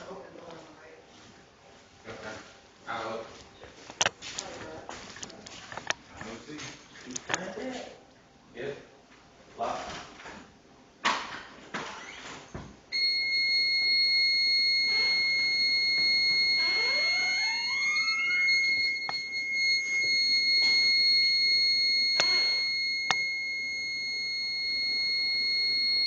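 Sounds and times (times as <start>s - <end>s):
security alarm high-pitched tone: 12.9s - 26.0s.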